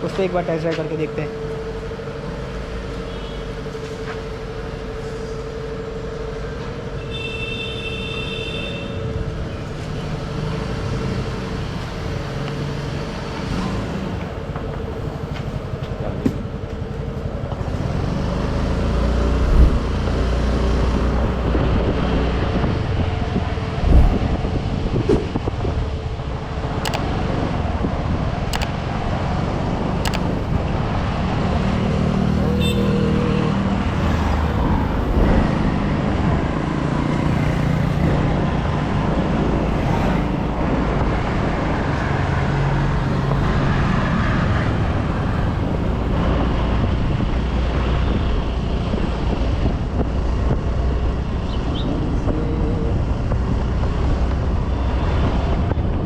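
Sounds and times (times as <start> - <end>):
traffic: 0.0 - 56.0
wind buffeting microphone: 19.0 - 28.7.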